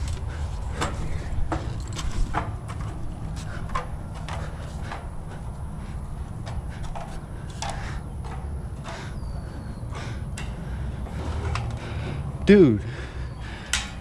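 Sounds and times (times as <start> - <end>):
knocks and scuffs of climbing: 0.0 - 14.0
steady low rumble: 0.0 - 14.0.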